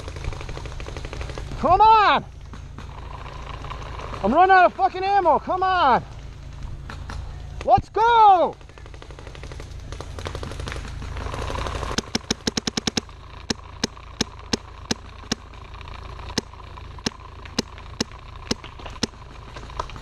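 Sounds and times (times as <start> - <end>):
paintball markers firing: 6.6 - 15.6, 16.2 - 20.0.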